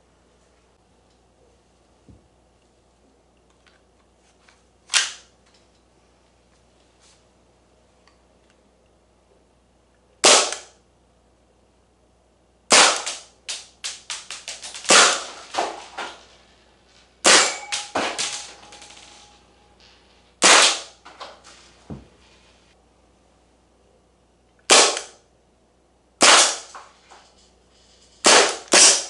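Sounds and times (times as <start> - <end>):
airsoft pistol shots: 10.2 - 10.8, 12.7 - 13.3, 14.8 - 15.8, 17.2 - 18.9, 20.4 - 21.0, 24.7 - 25.2, 26.2 - 26.8, 28.2 - 29.0.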